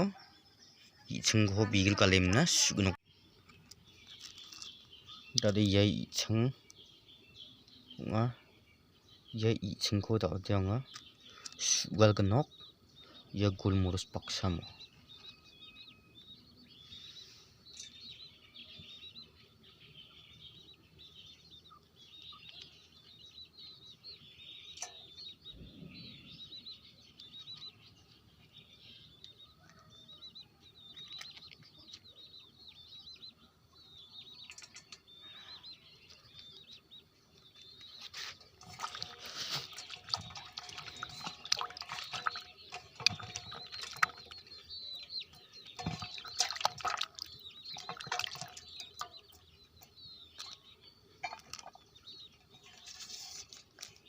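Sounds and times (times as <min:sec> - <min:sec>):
birds chirping: 0:00.0 - 0:54.0
handling clicks and knocks: 0:37.6 - 0:54.0.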